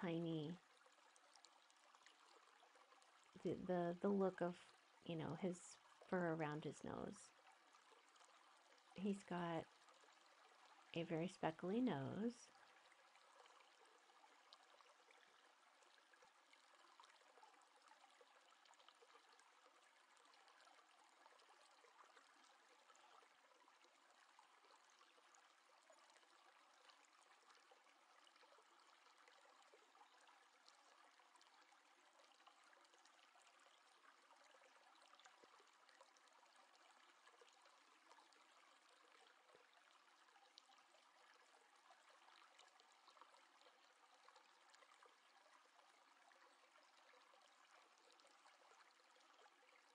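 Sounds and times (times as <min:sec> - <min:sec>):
faint steady hiss: 0:00.0 - 0:49.3.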